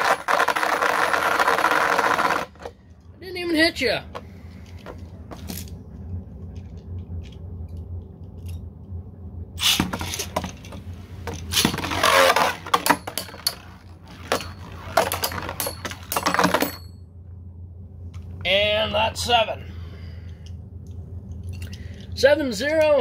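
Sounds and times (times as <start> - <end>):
spinning tops scraping and clashing: 9.6 - 16.8
rattling clatter: 9.6 - 17.0.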